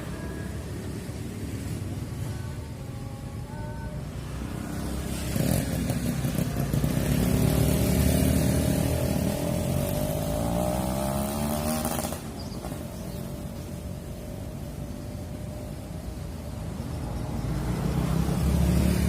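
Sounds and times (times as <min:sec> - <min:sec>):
vehicle engine passing by: 0:04.1 - 0:19.0.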